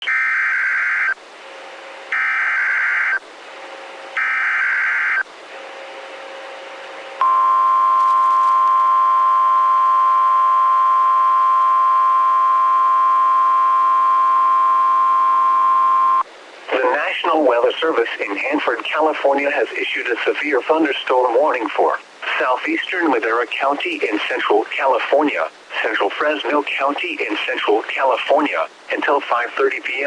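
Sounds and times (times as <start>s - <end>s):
steady warning alarm tone: 2.1s - 3.2s, 4.2s - 5.2s, 7.2s - 16.2s
faint radio hiss: 7.8s - 30.0s.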